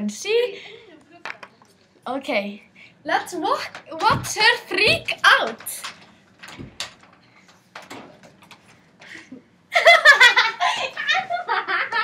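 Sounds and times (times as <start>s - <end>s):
girl laughing loudly: 9.7s - 12.0s.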